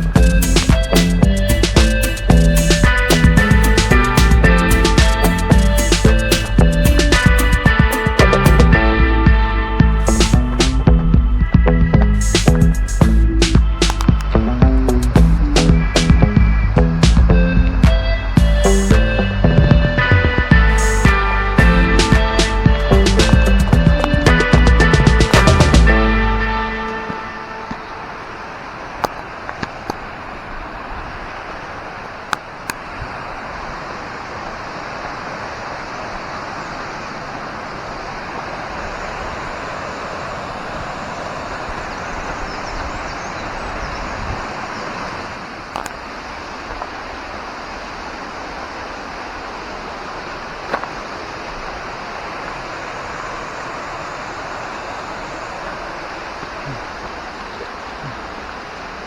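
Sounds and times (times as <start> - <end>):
waterfall rushing: 0.0 - 59.0
sharp clicks: 12.4 - 16.2.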